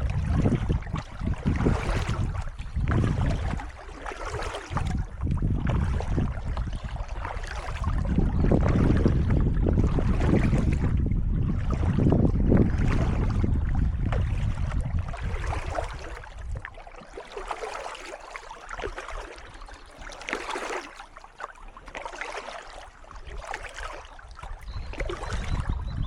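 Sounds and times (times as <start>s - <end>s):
wind buffeting microphone: 0.0s - 16.8s, 23.3s - 26.0s
paddle strokes splashing in water: 0.0s - 26.0s.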